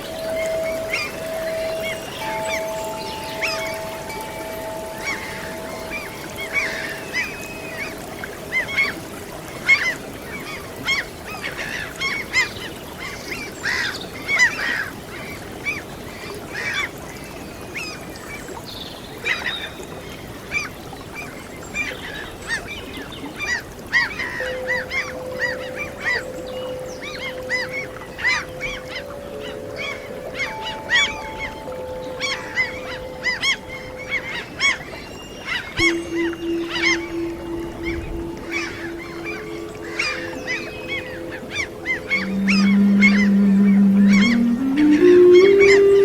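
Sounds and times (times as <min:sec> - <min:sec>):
soft held musical notes: 0:00.0 - 0:10.8, 0:24.2 - 0:46.0
gulls calling: 0:00.0 - 0:14.9, 0:23.4 - 0:46.0
sea waves: 0:00.0 - 0:46.0.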